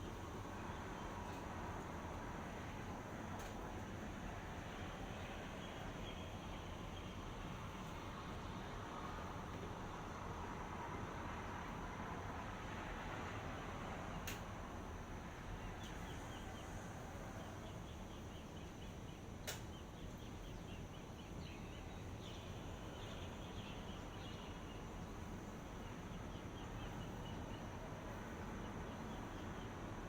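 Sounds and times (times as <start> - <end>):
small birds chirping: 15.5 - 29.9.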